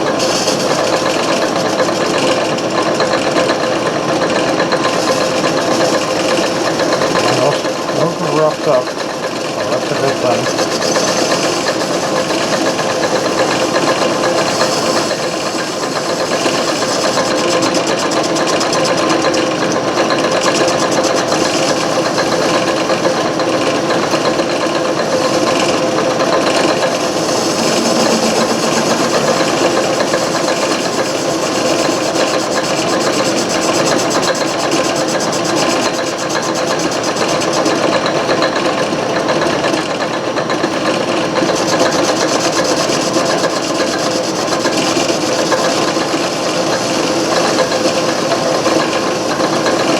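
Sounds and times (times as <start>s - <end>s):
metal lathe whirring: 26.4s - 33.9s.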